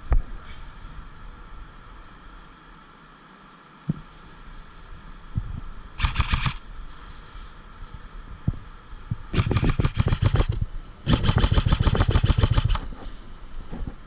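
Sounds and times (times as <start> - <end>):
airsoft gun firing bursts: 6.0 - 6.6, 9.4 - 12.9.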